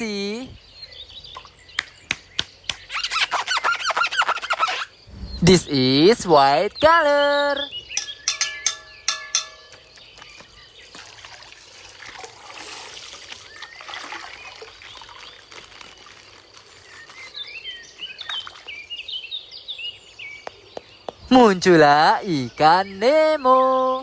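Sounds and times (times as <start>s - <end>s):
high squeaks: 2.9s - 5.7s
water trickling from bag: 9.8s - 19.1s.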